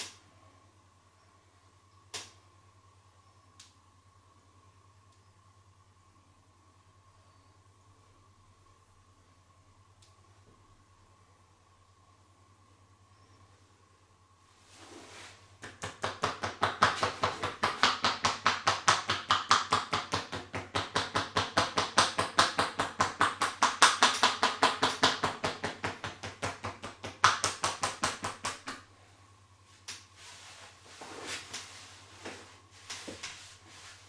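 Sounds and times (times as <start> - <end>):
hands slapping on body: 15.6 - 28.9.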